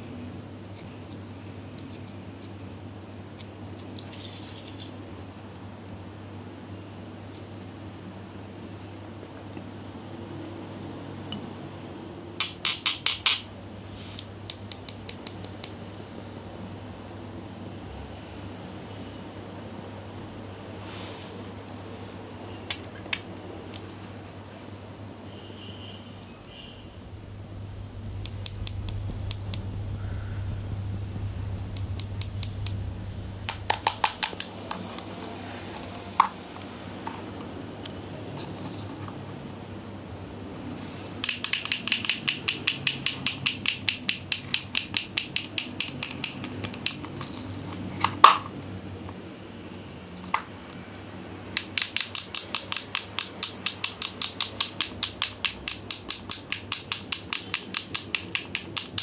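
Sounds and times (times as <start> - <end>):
hard objects knocking: 26.2 - 34.4.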